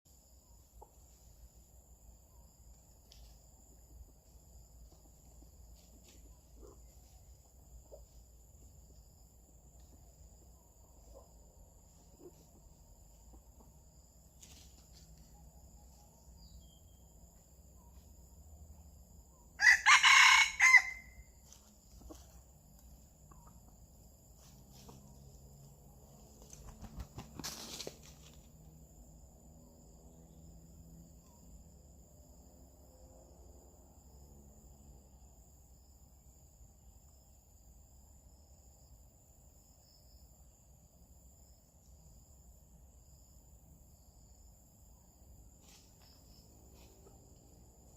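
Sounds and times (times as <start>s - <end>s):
high-pitched insect-like whine: 0.1s - 47.9s
junglefowl cock crowing: 19.6s - 21.3s.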